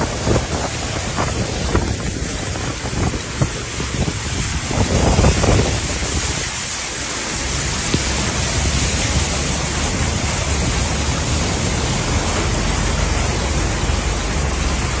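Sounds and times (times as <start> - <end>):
rushing floodwater: 0.0 - 15.0
torrential rain: 0.0 - 15.0.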